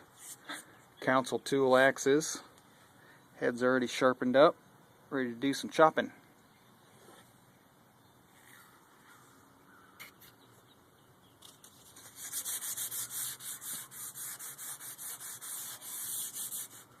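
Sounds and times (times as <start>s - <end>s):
sandpaper scratching on wood: 11.7s - 17.0s.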